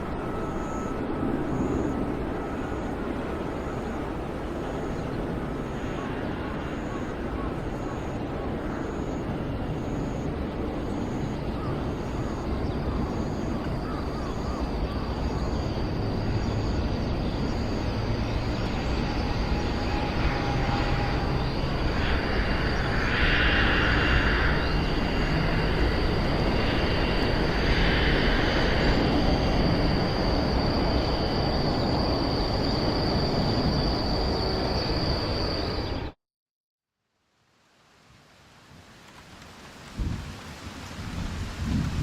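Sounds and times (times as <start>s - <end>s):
thin high whine: 0.0s - 4.9s, 14.4s - 36.1s
aircraft roar overhead: 0.0s - 36.2s.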